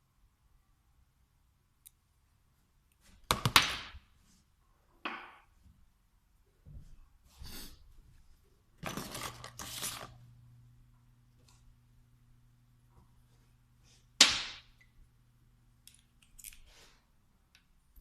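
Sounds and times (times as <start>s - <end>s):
rustling and scraping: 6.8s - 10.2s.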